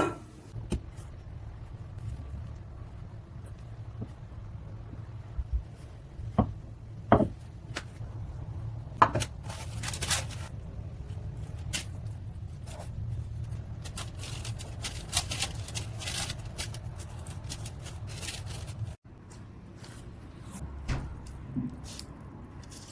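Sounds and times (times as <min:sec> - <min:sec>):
steady low hum: 0:00.0 - 0:22.6
crackly scraping and rustling of food: 0:09.1 - 0:20.6, 0:21.2 - 0:22.9.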